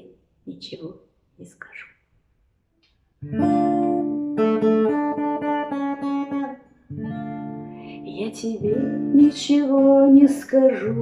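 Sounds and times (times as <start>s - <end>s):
acoustic guitar picking: 3.2s - 11.0s.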